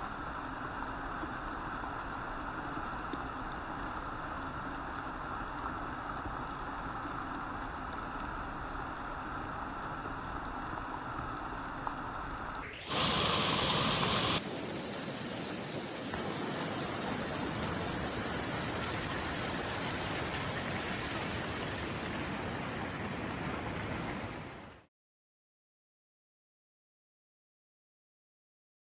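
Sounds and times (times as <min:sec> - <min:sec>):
flooding river rushing: 0:12.7 - 0:24.8.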